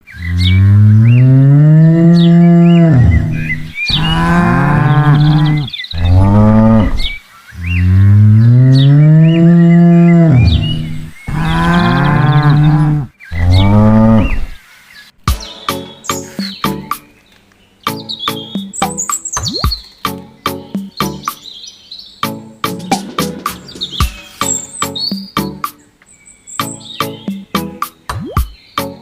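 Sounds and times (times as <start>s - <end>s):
cows mooing: 0.2s - 14.6s.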